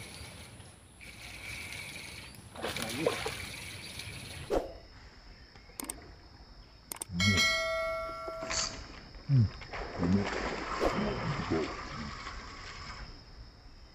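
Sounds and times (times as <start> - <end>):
sharp clicks: 5.6 - 6.0, 6.9 - 7.2
bell-like ringing tone: 7.2 - 8.8.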